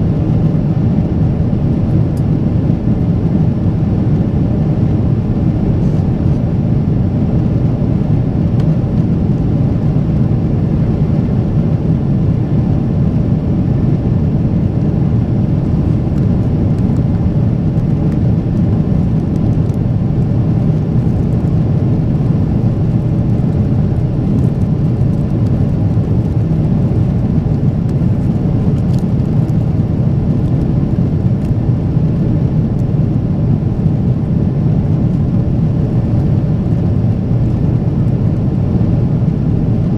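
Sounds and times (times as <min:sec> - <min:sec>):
jet engines in aircraft cabin: 0:00.0 - 0:39.9.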